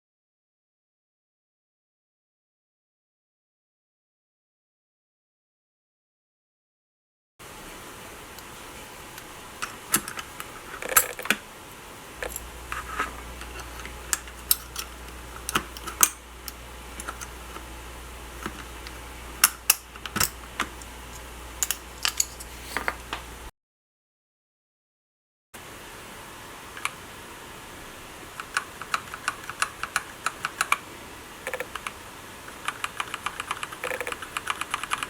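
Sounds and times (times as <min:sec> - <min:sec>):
mechanical keyboard typing: 0:28.4 - 0:30.8, 0:31.5 - 0:35.0.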